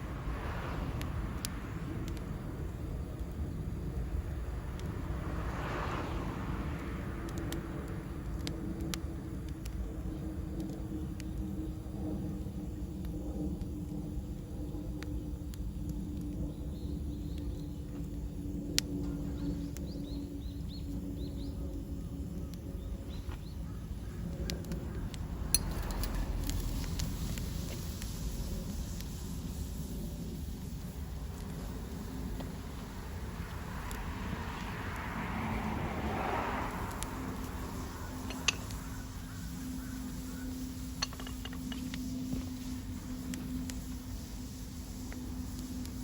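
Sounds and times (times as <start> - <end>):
low steady hum: 0.0 - 46.0
steady low rumble: 0.0 - 46.0
sharp clicks and snaps: 7.2 - 11.5, 24.3 - 29.2, 32.3 - 35.1, 36.6 - 37.6.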